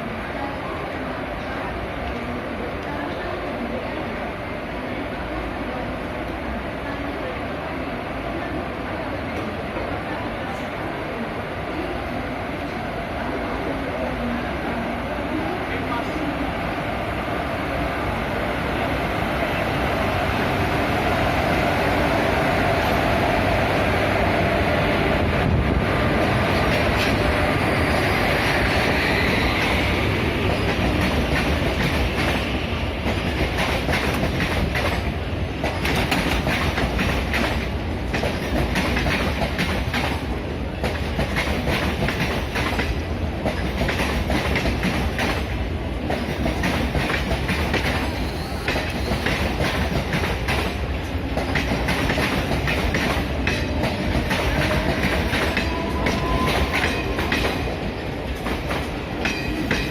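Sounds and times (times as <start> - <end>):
train wheels clicking on rails: 25.4 - 59.9.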